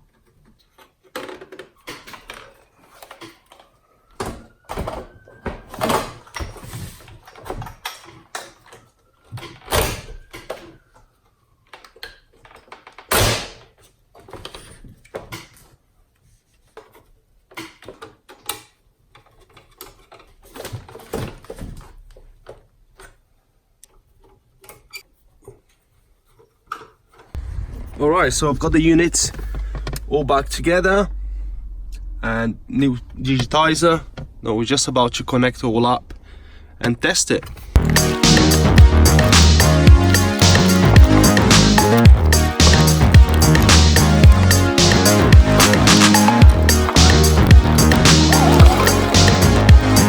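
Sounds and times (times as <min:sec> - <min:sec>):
faint whine: 0:27.4 - 0:34.1.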